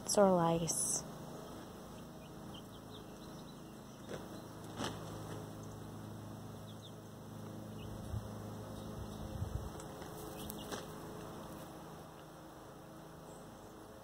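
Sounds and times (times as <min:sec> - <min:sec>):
chicks peeping: 0:00.7 - 0:11.7.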